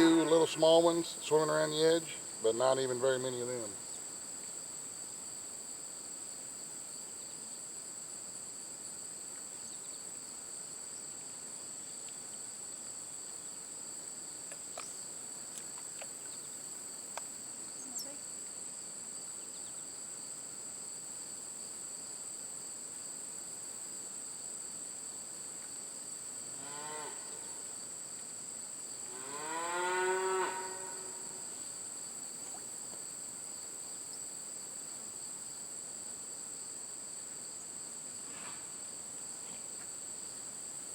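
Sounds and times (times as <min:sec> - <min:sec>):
cow mooing: 0:00.0 - 0:00.8, 0:26.6 - 0:27.4, 0:29.1 - 0:31.4
high-pitched insect drone: 0:00.0 - 0:02.6.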